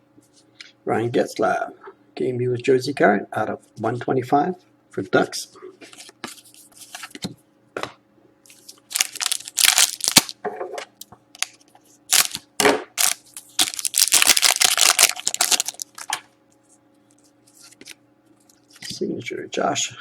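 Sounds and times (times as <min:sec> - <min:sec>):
cards being handled: 0:05.8 - 0:07.4, 0:11.4 - 0:12.4, 0:13.0 - 0:19.0
foil wrapper tearing and crumpling: 0:08.5 - 0:10.4, 0:11.4 - 0:12.4, 0:13.0 - 0:16.2.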